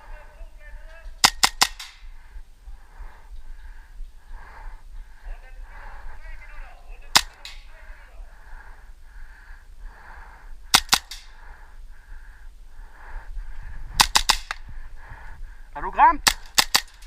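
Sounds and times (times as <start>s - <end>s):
airsoft guns firing: 1.2s - 2.1s, 7.1s - 7.7s, 10.7s - 11.3s, 14.0s - 14.6s, 16.2s - 17.0s.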